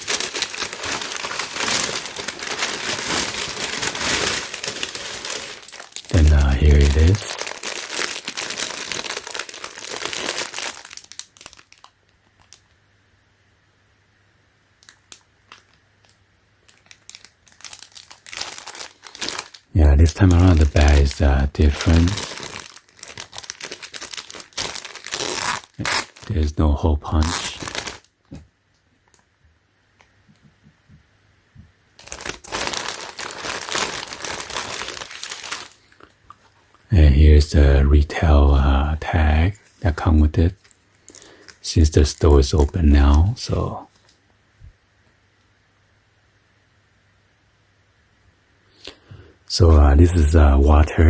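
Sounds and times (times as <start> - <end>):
plastic bag crinkling: 0.0 - 12.7, 14.8 - 28.1, 32.0 - 36.5, 39.6 - 44.1.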